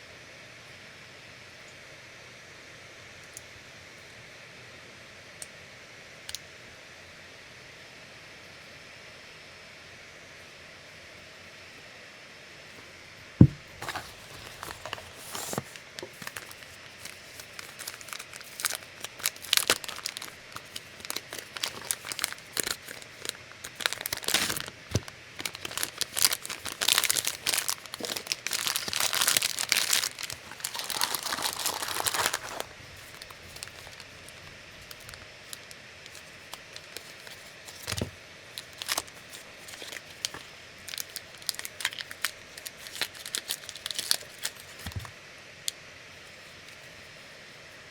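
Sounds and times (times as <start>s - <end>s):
packaging crinkling and tearing: 13.7s - 45.1s.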